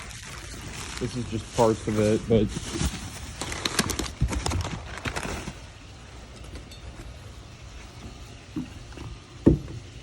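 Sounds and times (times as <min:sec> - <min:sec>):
clicks and rustles of parts handled: 0:00.0 - 0:05.7.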